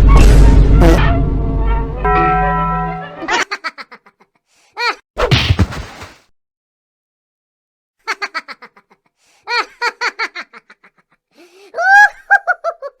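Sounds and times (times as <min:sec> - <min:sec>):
high-pitched laughter: 0:03.2 - 0:05.0, 0:08.1 - 0:13.0.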